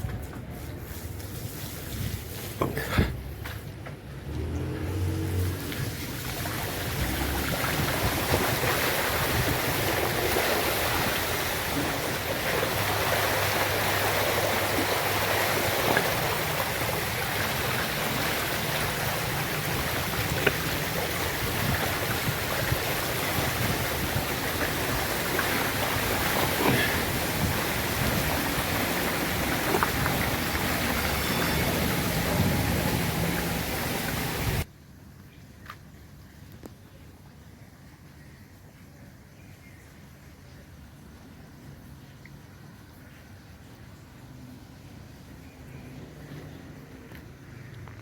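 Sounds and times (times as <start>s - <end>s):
water rushing: 4.2s - 34.7s.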